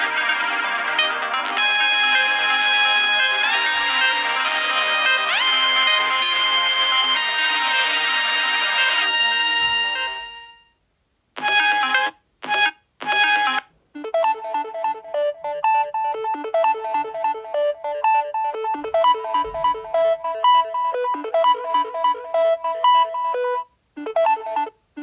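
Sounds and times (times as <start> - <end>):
repeating ringtone melody: 0.0 - 9.3, 11.4 - 24.8
phone ringtone tone: 0.0 - 10.5, 11.4 - 24.8
short ringtone chords: 11.4 - 24.8.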